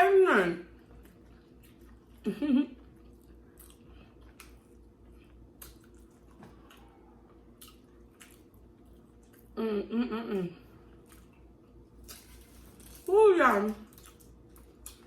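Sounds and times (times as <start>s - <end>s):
wet mouth chewing sounds: 2.8s - 9.6s, 13.8s - 15.0s.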